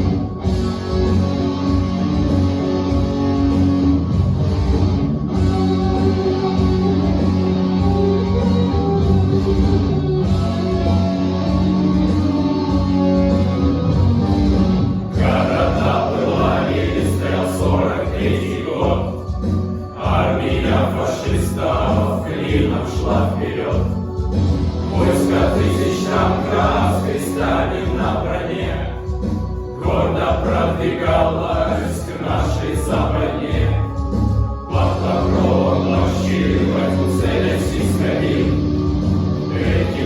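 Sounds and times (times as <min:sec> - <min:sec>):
backing track music: 0:00.0 - 0:40.0
male choir singing chords: 0:15.1 - 0:40.0.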